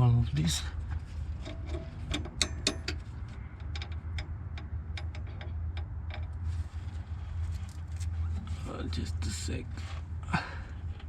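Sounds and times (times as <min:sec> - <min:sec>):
wrench clicking on metal bolt: 0:01.4 - 0:03.0.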